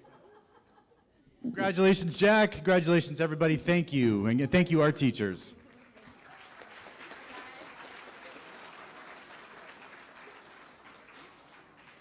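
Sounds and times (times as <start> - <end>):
audience applauding: 5.6 - 12.0.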